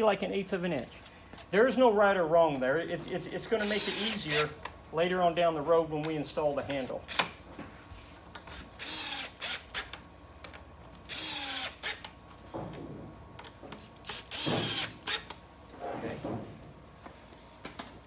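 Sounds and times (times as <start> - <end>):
power drill driving screws: 3.6 - 4.6, 8.5 - 10.0, 11.1 - 12.1, 14.0 - 15.4.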